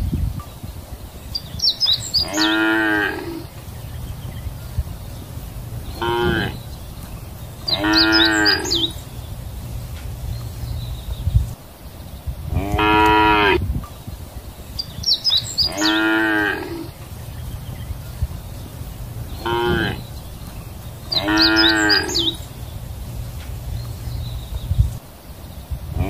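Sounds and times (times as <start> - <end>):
cows mooing: 2.2 - 3.5, 6.0 - 6.6, 7.7 - 8.9, 12.5 - 13.6, 15.6 - 16.9, 19.4 - 20.0, 21.1 - 22.4
steady low rumble: 3.2 - 15.8, 16.7 - 26.0.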